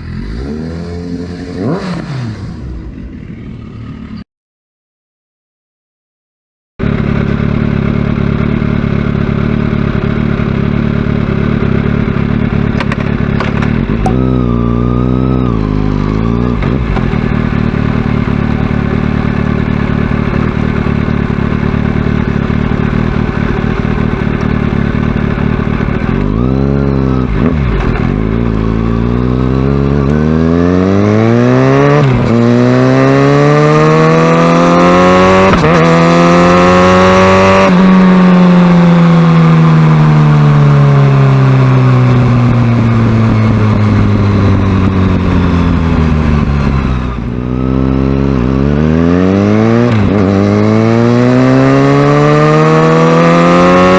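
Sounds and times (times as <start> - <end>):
motorcycle engine revving: 0.0 - 4.2, 6.8 - 53.9.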